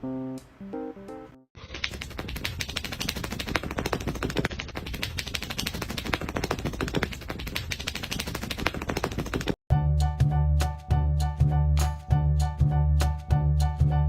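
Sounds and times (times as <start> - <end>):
rapid clatter of clicks and taps: 1.6 - 9.6.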